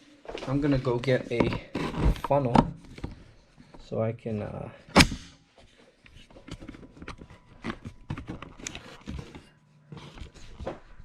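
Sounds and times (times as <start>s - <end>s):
objects clattering being handled: 5.6s - 11.0s.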